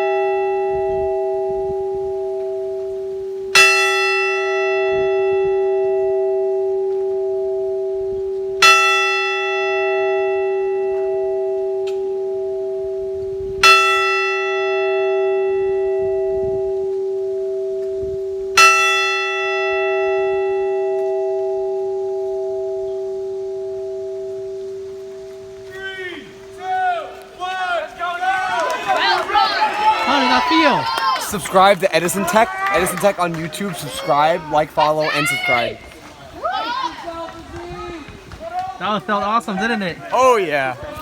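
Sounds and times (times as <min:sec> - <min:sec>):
tower bell tolling: 0:00.0 - 0:25.8.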